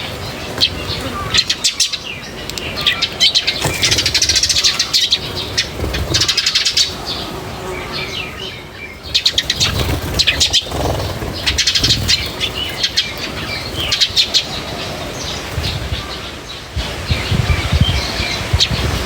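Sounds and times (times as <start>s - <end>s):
small birds chirping: 0.0s - 19.0s
low uneven thumps: 16.8s - 19.0s.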